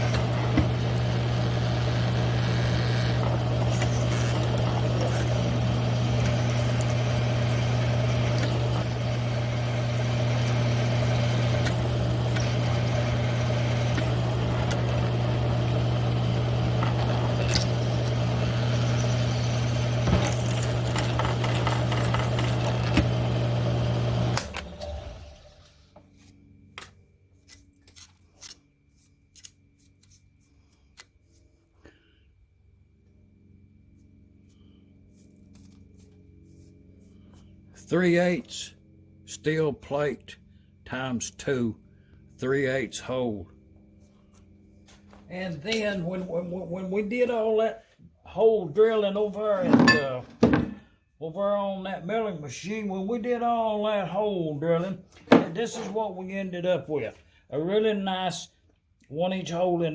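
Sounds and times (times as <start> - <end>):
hole saw cutting steel: 0.0 - 25.0
machine winding down: 0.0 - 25.8
mill-drill motor hum: 0.0 - 25.8.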